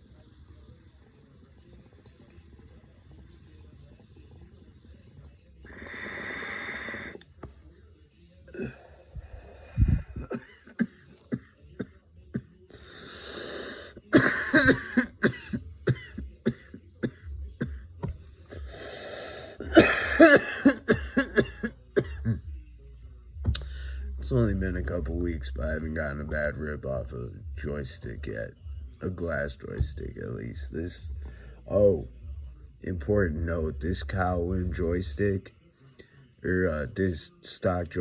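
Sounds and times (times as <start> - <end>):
long breaths drawn: 5.6 - 7.2
person coughing hard: 10.2 - 12.5, 14.1 - 17.8, 19.6 - 22.4.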